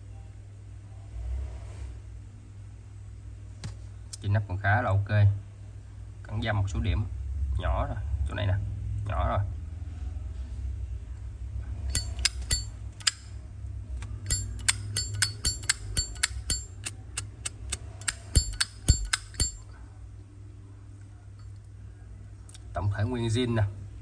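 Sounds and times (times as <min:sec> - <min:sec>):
steady low hum: 0:11.4 - 0:22.4
lighter lid metallic clinks: 0:11.9 - 0:13.2, 0:14.3 - 0:19.6.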